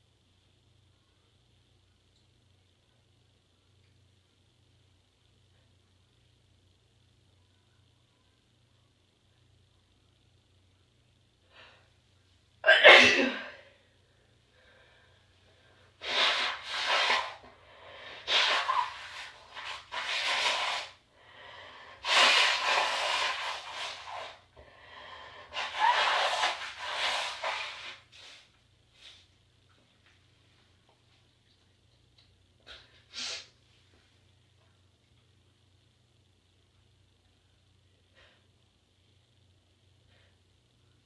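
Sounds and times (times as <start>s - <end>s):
woman sneezing: 12.6s - 13.7s
woman blowing her nose: 16.0s - 17.4s, 18.0s - 21.0s, 21.9s - 24.4s, 25.4s - 28.4s, 33.1s - 33.5s.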